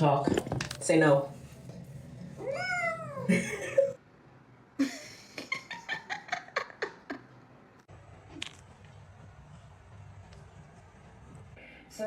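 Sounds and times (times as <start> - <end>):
cat meowing: 2.4 - 3.4.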